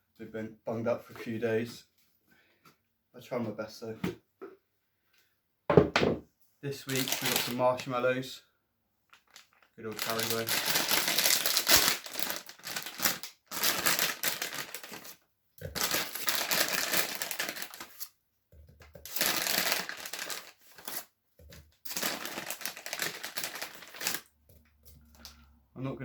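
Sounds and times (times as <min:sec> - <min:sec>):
plastic bag crinkling: 0:06.8 - 0:07.9, 0:09.1 - 0:18.1, 0:18.9 - 0:21.1, 0:21.8 - 0:24.3, 0:24.9 - 0:25.4.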